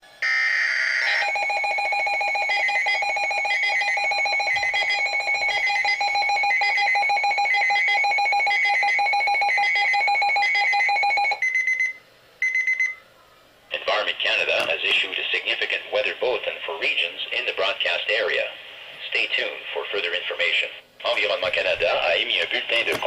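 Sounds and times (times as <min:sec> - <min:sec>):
electronic alarm tone: 0:00.2 - 0:13.0.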